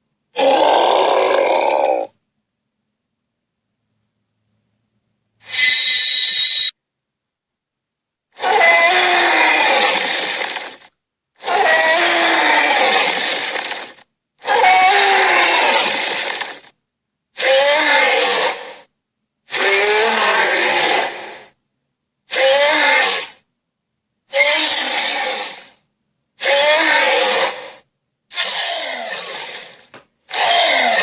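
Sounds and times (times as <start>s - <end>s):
harsh raspy creature roars: 0.4s - 2.2s, 8.4s - 16.7s, 17.4s - 18.9s, 19.5s - 21.6s, 22.3s - 23.4s, 24.3s - 25.8s, 26.4s - 31.0s.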